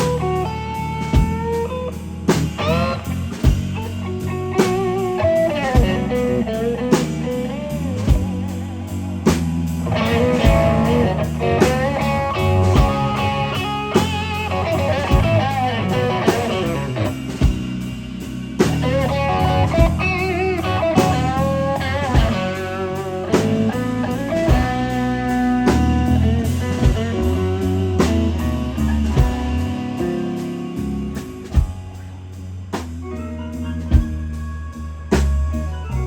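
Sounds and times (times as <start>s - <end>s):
electric guitar lead: 0.0s - 36.0s
live blues band: 0.0s - 36.0s
drum hits: 2.3s - 6.3s, 9.3s - 22.6s, 25.7s - 32.1s, 33.9s - 34.3s.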